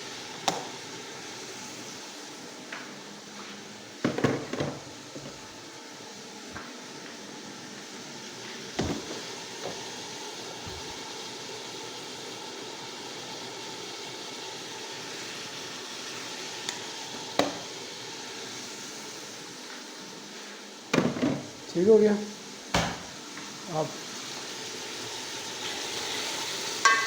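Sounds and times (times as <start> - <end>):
pot hissing on stove: 0.0 - 27.0.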